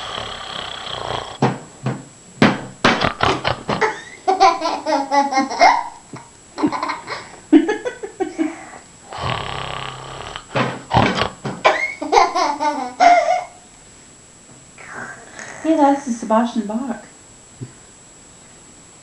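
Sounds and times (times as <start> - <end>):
person laughing: 2.9 - 8.8, 11.6 - 13.6.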